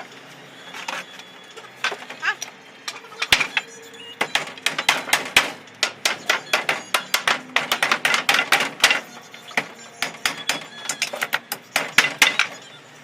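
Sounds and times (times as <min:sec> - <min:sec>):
hammer striking nails into wood: 0:04.2 - 0:12.6.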